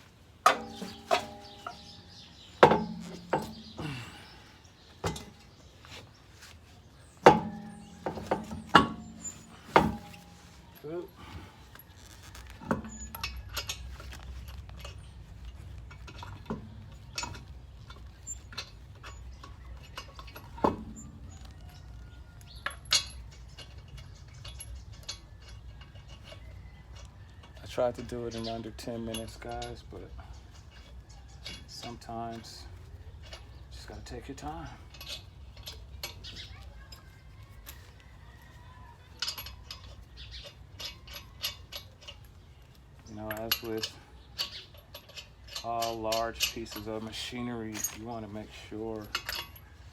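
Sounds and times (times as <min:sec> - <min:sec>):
metallic clinks of hand tools: 0:43.0 - 0:49.8.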